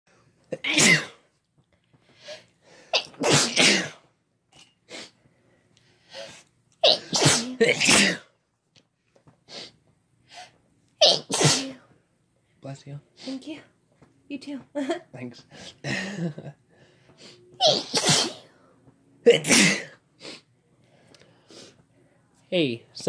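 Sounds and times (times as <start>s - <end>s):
person sneezing: 0.5s - 1.2s, 3.0s - 4.0s, 6.8s - 8.3s, 11.0s - 11.9s, 17.6s - 18.6s, 19.3s - 20.4s.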